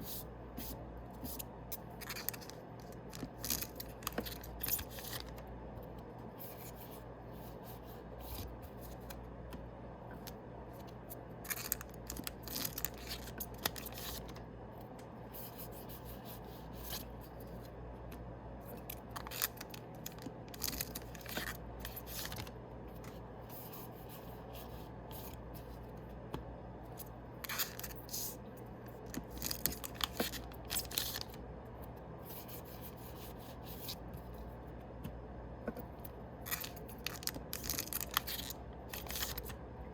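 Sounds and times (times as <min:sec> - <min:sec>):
steady low hum: 0:00.0 - 0:39.9
foil wrappers and cards rustling: 0:36.5 - 0:39.5.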